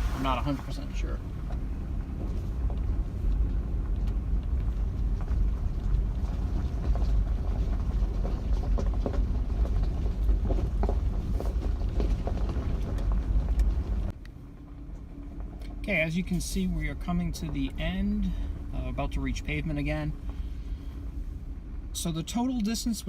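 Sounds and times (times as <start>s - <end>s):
vehicle driving on dirt road: 0.0s - 23.0s
knocks and rattles: 1.4s - 14.1s.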